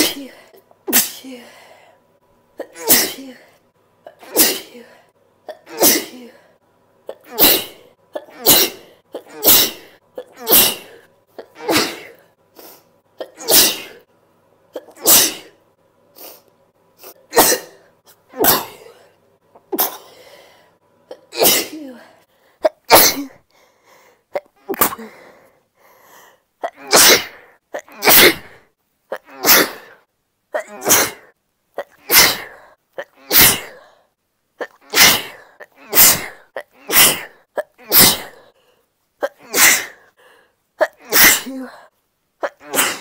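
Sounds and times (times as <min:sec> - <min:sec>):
person sneezing: 0:00.0 - 0:01.7, 0:02.6 - 0:06.5, 0:07.1 - 0:14.0, 0:14.8 - 0:15.6, 0:17.0 - 0:20.3, 0:21.1 - 0:23.4, 0:24.3 - 0:25.3, 0:26.6 - 0:30.0, 0:30.6 - 0:34.0, 0:34.6 - 0:38.5, 0:39.2 - 0:40.2, 0:40.8 - 0:43.0.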